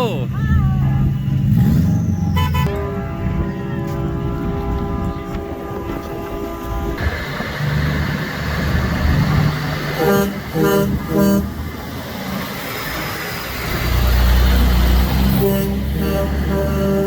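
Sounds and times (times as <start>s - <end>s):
truck and car engines rumbling: 0.0s - 17.0s
vehicle horn blasts: 2.4s - 7.0s, 10.0s - 11.5s, 15.3s - 17.0s.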